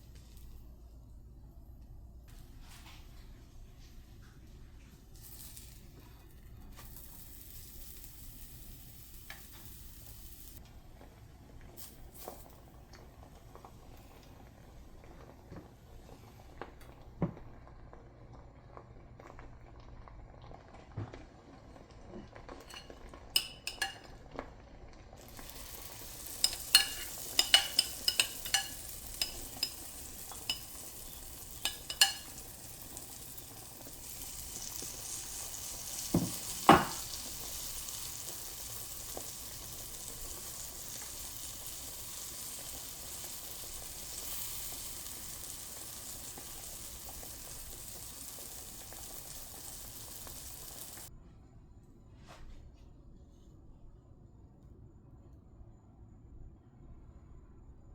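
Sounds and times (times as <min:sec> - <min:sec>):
pancakes sizzling in a pan: 0:05.0 - 0:10.6, 0:11.7 - 0:15.3, 0:22.1 - 0:51.1
utensil tapping a pan: 0:22.7 - 0:24.1, 0:25.5 - 0:33.1, 0:36.0 - 0:37.2.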